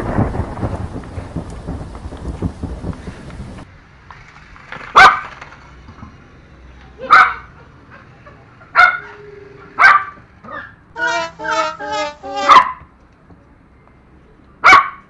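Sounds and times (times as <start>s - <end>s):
dog barking: 5.0s - 5.3s, 7.0s - 7.5s, 8.7s - 9.2s, 9.8s - 10.7s, 14.6s - 15.0s
short pitched notes: 9.0s - 10.3s, 10.9s - 12.8s.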